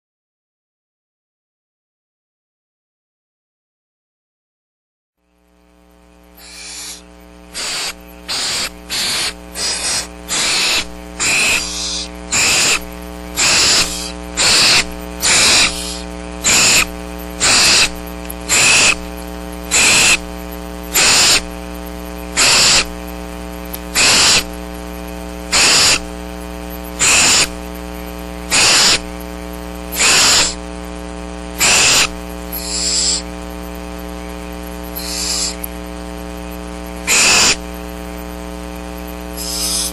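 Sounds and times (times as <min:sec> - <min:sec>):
steady electrical hum: 0:05.2 - 0:39.9
owlets hissing begging calls: 0:06.4 - 0:19.1, 0:19.7 - 0:20.3, 0:20.9 - 0:21.5, 0:22.4 - 0:22.9, 0:24.0 - 0:24.5, 0:25.5 - 0:26.1, 0:27.0 - 0:27.6, 0:28.5 - 0:29.1, 0:30.0 - 0:30.6, 0:31.6 - 0:33.3, 0:34.9 - 0:35.6, 0:37.1 - 0:37.6, 0:39.4 - 0:39.9.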